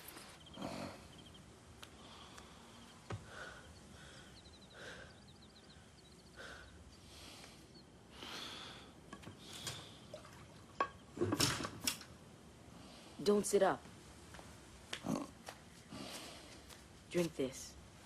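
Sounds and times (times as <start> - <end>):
heavy breaths and sighs: 0.0 - 10.1, 15.0 - 16.9.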